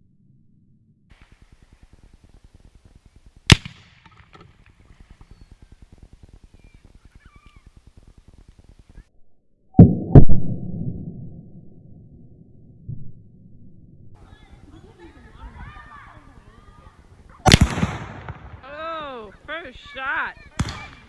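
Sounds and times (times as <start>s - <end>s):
explosive blasts: 3.5s - 4.6s, 17.4s - 18.8s, 20.5s - 21.0s
gunshot crack: 3.5s - 4.8s, 17.4s - 18.6s, 20.6s - 21.0s
explosion rumble: 17.4s - 18.7s.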